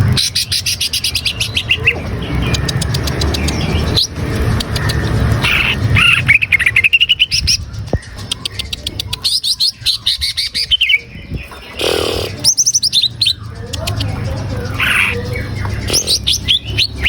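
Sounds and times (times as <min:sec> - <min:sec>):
bird chirping: 0:00.0 - 0:17.0
harsh bird call: 0:08.2 - 0:17.0.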